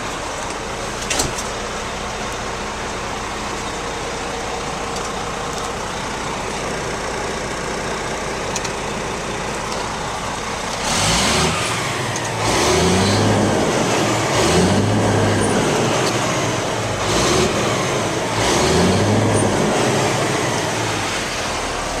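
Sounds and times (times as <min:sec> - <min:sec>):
diesel truck engine revving: 0:09.7 - 0:22.0.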